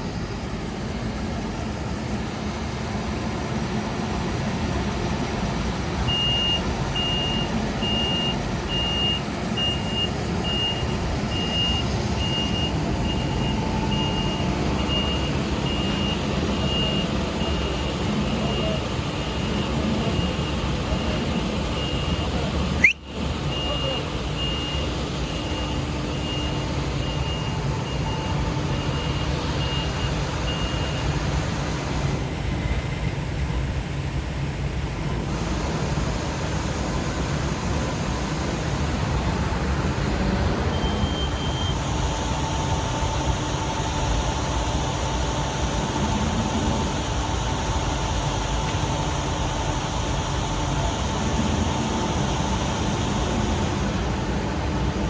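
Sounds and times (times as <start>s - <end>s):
diesel engine running: 0.0s - 55.0s
steady whine: 0.0s - 55.0s
reversing alarm beeping: 6.0s - 32.9s, 40.5s - 55.0s.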